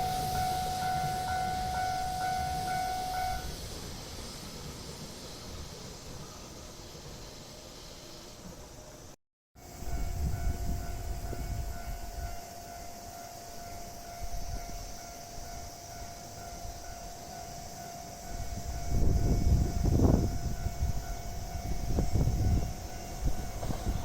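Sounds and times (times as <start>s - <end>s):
level crossing warning signal: 0.0s - 3.7s
train rumble: 0.0s - 24.0s.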